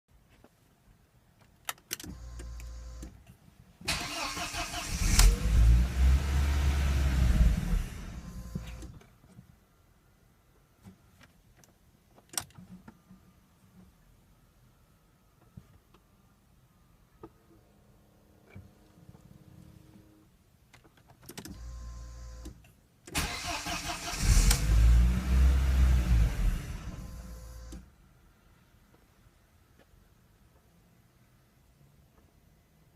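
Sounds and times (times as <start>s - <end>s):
car engine cranking and stalling: 3.9s - 9.0s, 23.2s - 27.8s.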